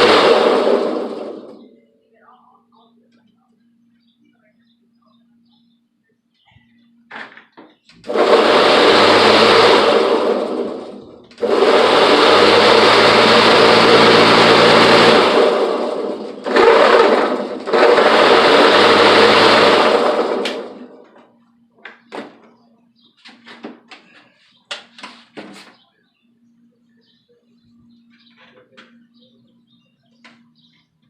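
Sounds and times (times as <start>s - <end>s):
electric lawnmower motor running: 0.0s - 1.8s, 8.0s - 22.1s.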